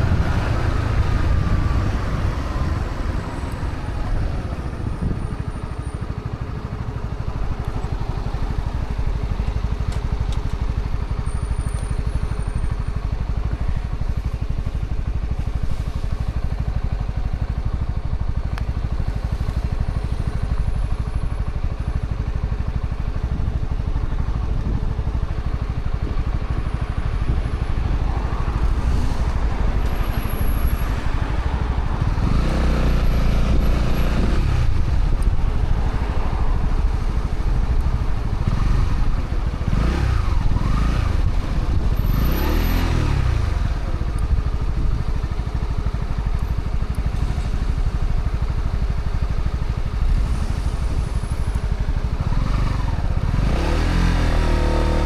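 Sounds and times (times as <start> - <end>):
wind rush: 0.0 - 2.9
motorcycle engine revving: 29.9 - 36.1, 36.9 - 55.0.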